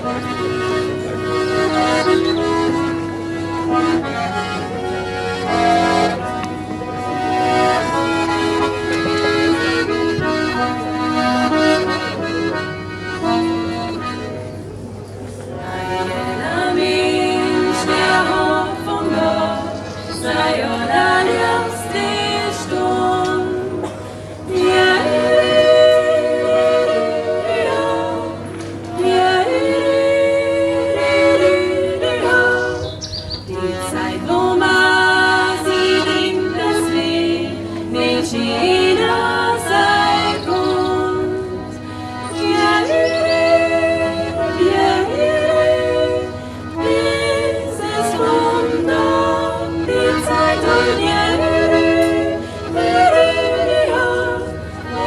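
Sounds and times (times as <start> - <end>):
group singing in harmony: 0.0 - 4.5, 15.6 - 55.0.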